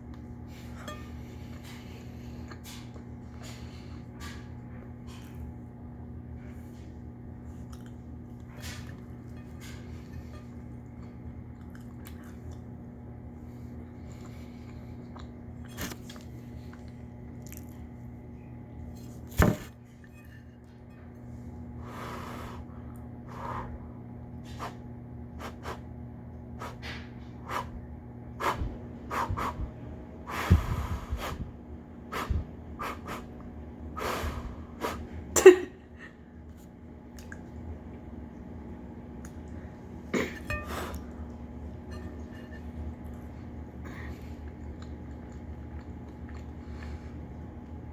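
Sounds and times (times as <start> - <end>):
chewing: 7.5 - 9.1, 10.6 - 12.8, 14.0 - 18.0, 42.9 - 47.5.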